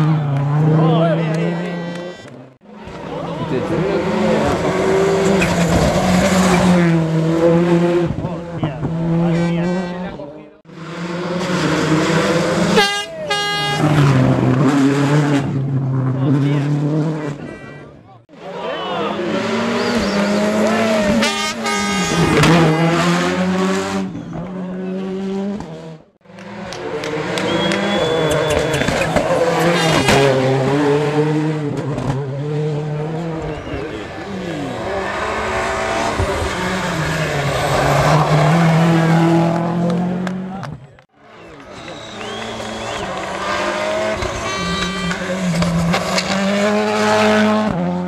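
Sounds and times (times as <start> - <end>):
rally car engines running hard: 0.0 - 12.8, 13.7 - 17.8, 18.4 - 48.0
high-pitched squeal: 27.4 - 29.2, 41.4 - 45.6.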